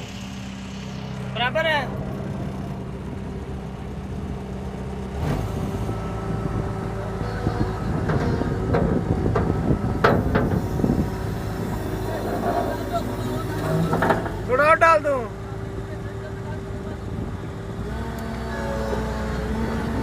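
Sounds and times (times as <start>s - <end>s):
diesel engine running: 0.0s - 20.0s
load clattering into dumper: 7.9s - 14.7s.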